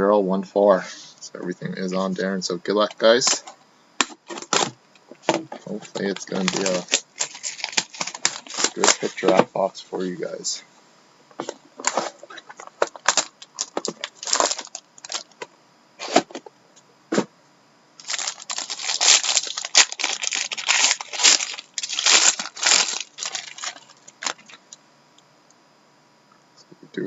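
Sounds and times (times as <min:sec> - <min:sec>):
packaging clicks and crackles: 0:05.8 - 0:09.3, 0:11.8 - 0:15.5, 0:18.0 - 0:24.8
wrapper crinkling and tearing: 0:05.9 - 0:09.3, 0:12.8 - 0:15.4, 0:18.0 - 0:24.8.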